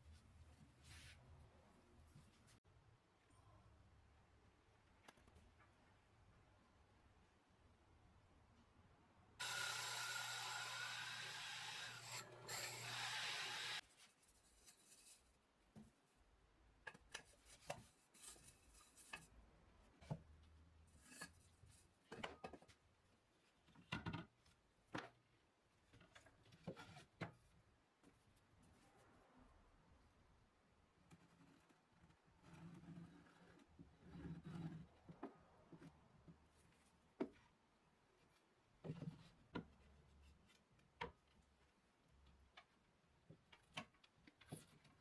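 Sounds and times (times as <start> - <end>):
power tool running: 9.4 - 13.8
light knocks and taps of tools: 22.1 - 22.8, 37.2 - 37.5, 38.8 - 41.5.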